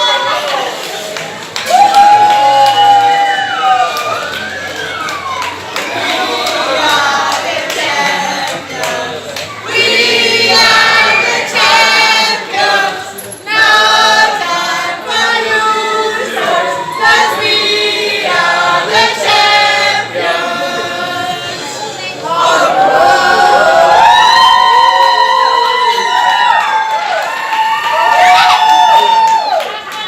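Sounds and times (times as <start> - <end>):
crowd singing in chorus: 5.7 - 24.1.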